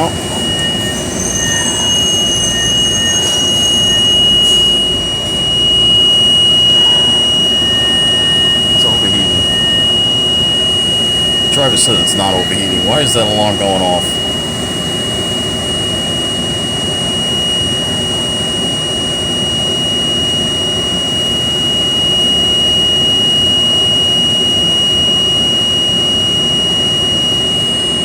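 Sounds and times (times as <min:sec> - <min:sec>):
bus engine and road rumble: 0:00.0 - 0:01.1
high-pitched bus warning alarm: 0:00.0 - 0:28.0.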